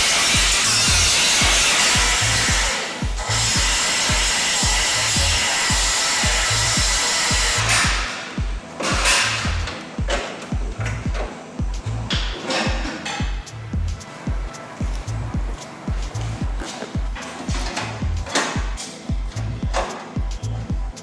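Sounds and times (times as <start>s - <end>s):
power tool hissing on metal: 0.0s - 7.8s
music with thumping beat: 0.0s - 21.0s.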